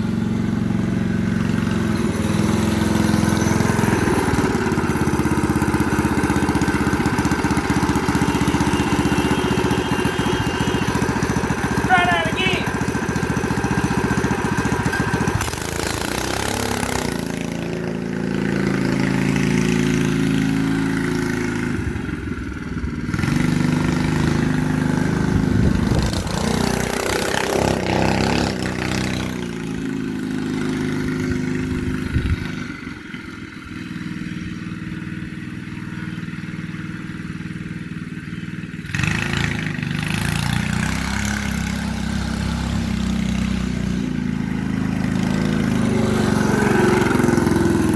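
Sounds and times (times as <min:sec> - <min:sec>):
go-kart engine revving: 0:00.0 - 0:47.9.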